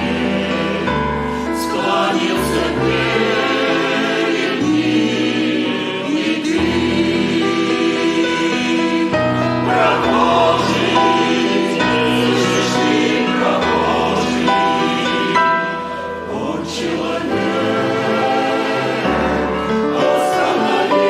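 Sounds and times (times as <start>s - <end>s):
choir singing a hymn: 0.0s - 21.0s.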